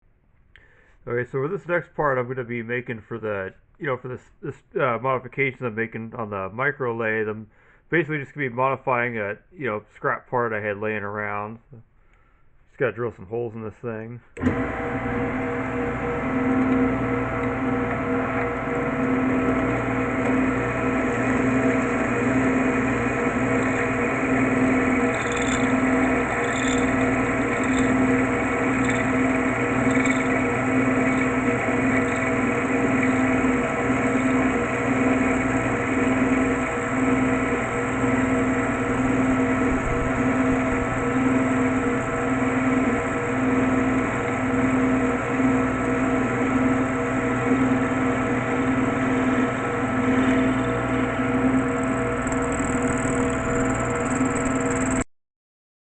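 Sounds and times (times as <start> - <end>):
drilling machine motor running: 14.4 - 55.1.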